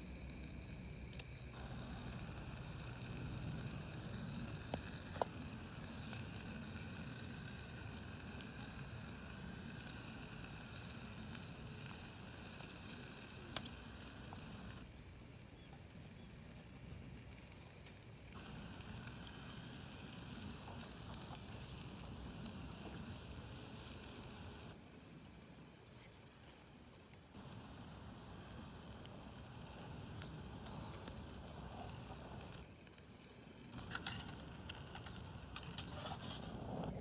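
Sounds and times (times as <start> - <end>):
campfire hissing: 0.0 - 15.4, 18.2 - 24.8, 27.4 - 32.8, 33.6 - 37.0
campfire crackling pops: 1.1 - 14.8, 18.3 - 24.8, 27.4 - 32.7, 33.7 - 37.0.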